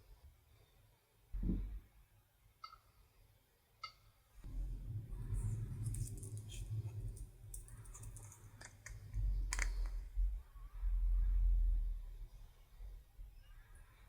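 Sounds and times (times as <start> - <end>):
low rumble of handling: 4.4 - 12.1.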